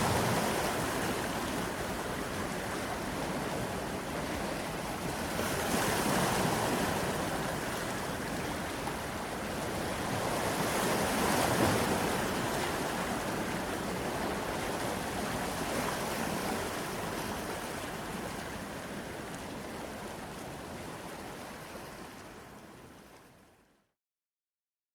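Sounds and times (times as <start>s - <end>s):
sea waves breaking on shore: 0.0s - 23.5s.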